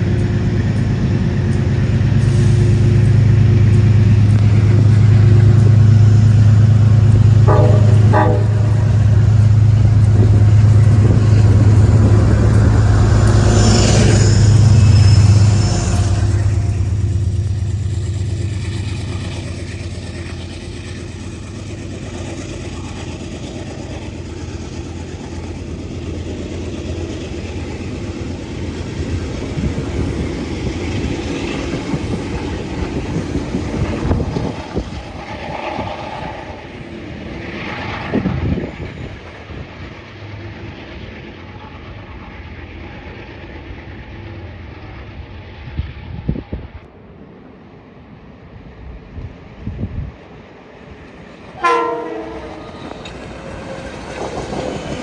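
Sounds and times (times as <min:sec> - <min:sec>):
rail clicks: 0:00.0 - 0:47.0, 0:49.3 - 0:55.0
train running with low hum: 0:00.0 - 0:55.0.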